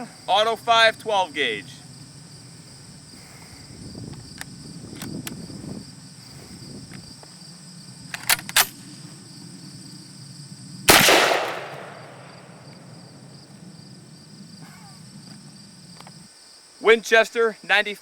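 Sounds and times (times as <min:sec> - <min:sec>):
insects chirring: 0:00.0 - 0:18.0
sharp gun clicks: 0:08.1 - 0:08.8, 0:10.9 - 0:12.3
shotgun blast: 0:10.9 - 0:12.9.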